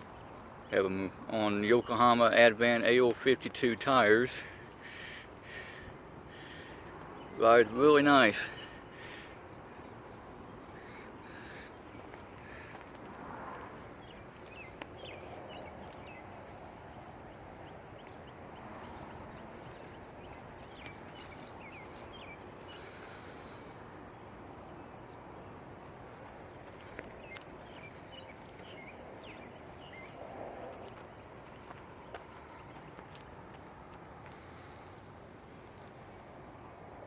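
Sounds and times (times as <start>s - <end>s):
steady background hiss: 16.4s - 27.4s.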